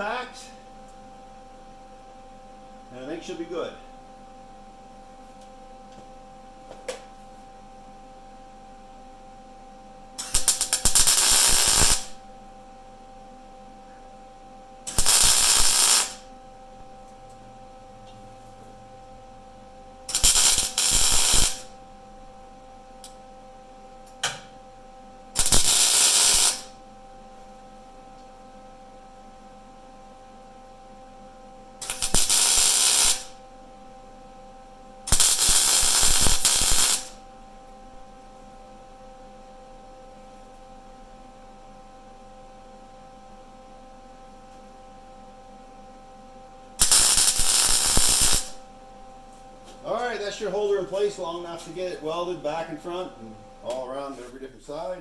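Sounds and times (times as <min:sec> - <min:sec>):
welding arc crackling: 0:10.2 - 0:12.2, 0:14.9 - 0:16.2, 0:20.1 - 0:21.8, 0:25.4 - 0:26.7, 0:31.8 - 0:33.4, 0:35.1 - 0:37.2, 0:46.8 - 0:48.6
welder hum: 0:10.2 - 0:12.3, 0:14.9 - 0:17.8, 0:20.0 - 0:23.2, 0:25.4 - 0:26.8, 0:31.8 - 0:33.5, 0:35.1 - 0:37.2, 0:46.8 - 0:55.0.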